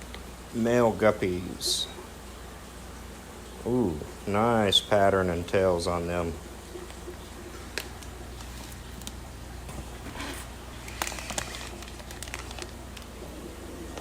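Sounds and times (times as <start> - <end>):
handling clicks and rustles: 8.0 - 13.1.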